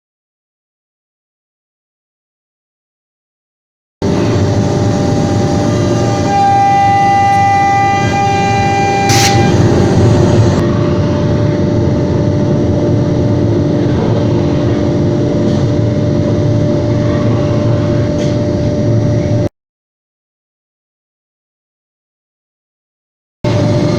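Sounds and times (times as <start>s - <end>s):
router spindle whine: 4.0s - 10.7s
higher tone: 4.0s - 10.8s.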